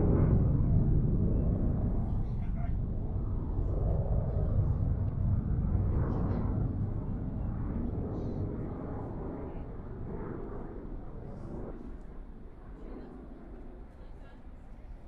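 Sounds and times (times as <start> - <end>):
distant jet rumbling: 0.0 - 12.0.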